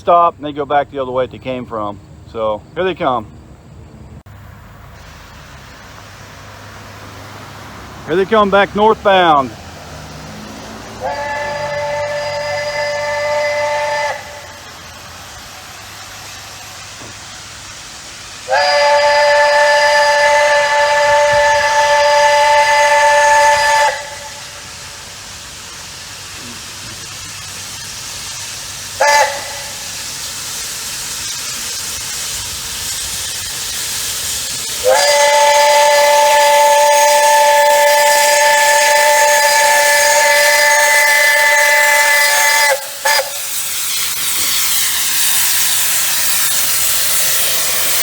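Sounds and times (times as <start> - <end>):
steam hiss: 4.1 - 48.0
steam locomotive chime whistle: 10.3 - 15.1, 18.4 - 25.2, 27.0 - 30.4, 34.5 - 48.0.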